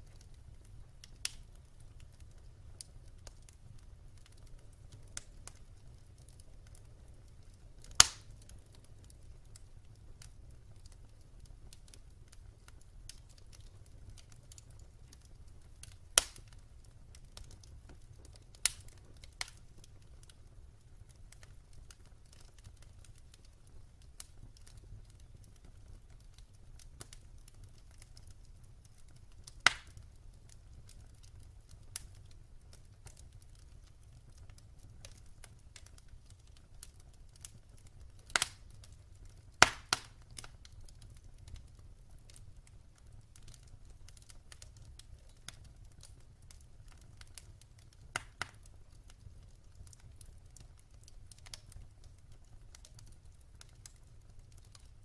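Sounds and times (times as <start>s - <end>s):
fire crackling: 0.0s - 55.0s
fire rumbling: 0.0s - 55.0s
logs popping: 7.9s - 8.2s, 16.2s - 16.4s, 39.6s - 40.5s.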